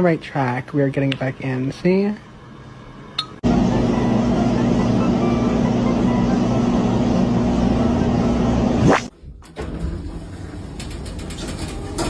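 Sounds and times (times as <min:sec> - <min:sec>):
steady mechanical hum: 0:00.0 - 0:12.0.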